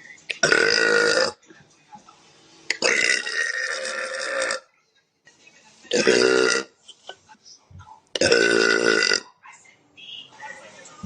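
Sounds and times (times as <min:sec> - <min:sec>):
woman burping: 0:00.4 - 0:01.4, 0:02.7 - 0:04.7, 0:05.9 - 0:06.8, 0:08.2 - 0:09.3.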